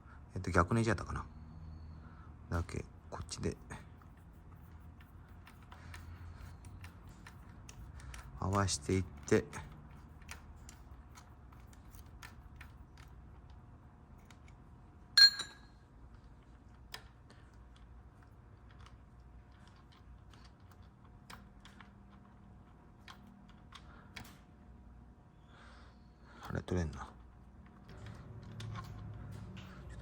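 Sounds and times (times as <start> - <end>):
sharp metallic clink: 15.2 - 15.8.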